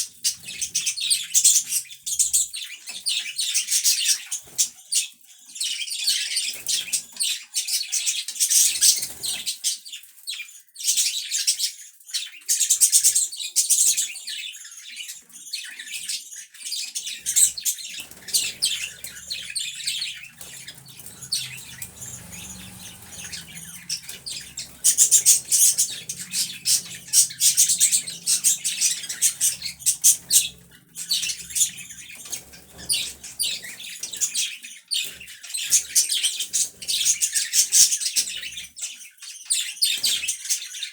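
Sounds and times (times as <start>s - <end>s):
budgies chirping: 17.2s - 34.4s.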